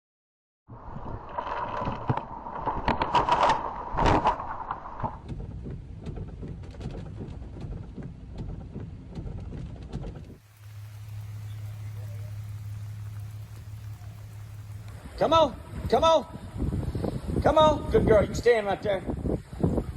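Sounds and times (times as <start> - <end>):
wind: 0.7 - 19.9
sharp crackles and taps: 10.2 - 15.1
rain: 10.3 - 17.0.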